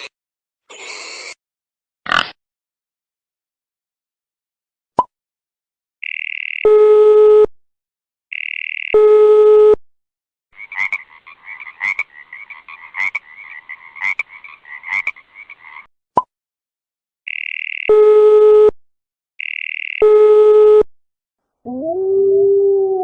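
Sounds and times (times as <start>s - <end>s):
frogs croaking: 10.6s - 15.9s.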